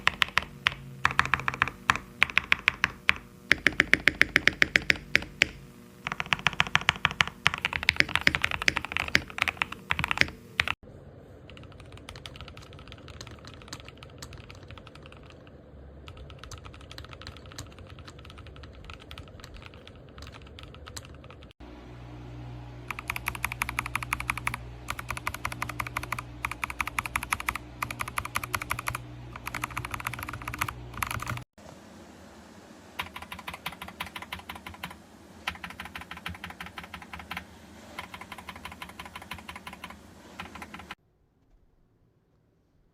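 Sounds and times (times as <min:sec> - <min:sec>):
fast typing on mechanical keyboard: 0:00.0 - 0:10.8, 0:11.5 - 0:21.6, 0:22.9 - 0:31.5, 0:33.0 - 0:41.0
low hum: 0:21.6 - 0:33.4.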